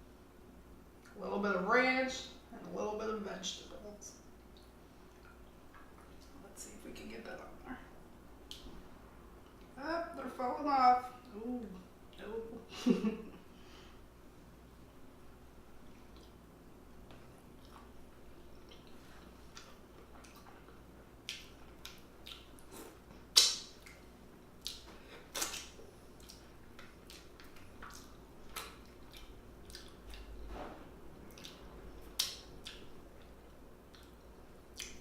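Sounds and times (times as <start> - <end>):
chewing with wet mouth smacks: 4.4 - 6.4, 15.8 - 16.4, 17.1 - 30.4, 31.2 - 35.0.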